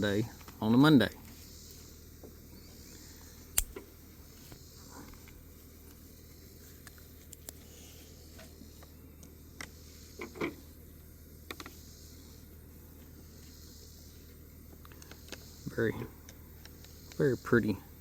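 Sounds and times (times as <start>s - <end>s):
pocket knife clicks and taps: 3.6s - 3.8s.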